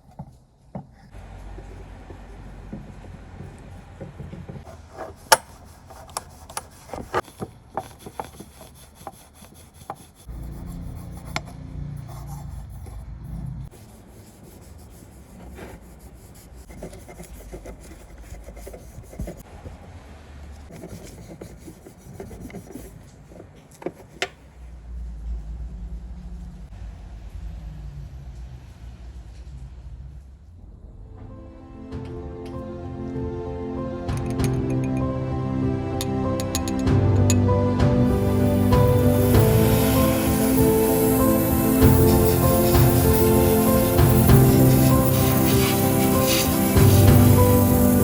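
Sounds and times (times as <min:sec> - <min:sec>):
hand rubbing and rasping: 0:00.0 - 0:13.0, 0:20.7 - 0:24.8
sharp taps and clicks: 0:36.0 - 0:37.5.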